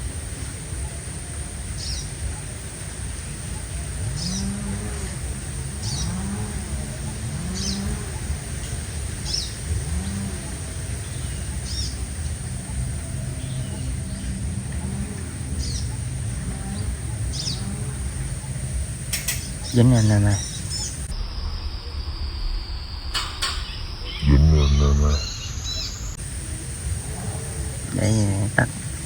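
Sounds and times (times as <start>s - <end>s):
steady high hiss: 0.0s - 29.0s
sunbird high calls: 0.3s - 29.0s.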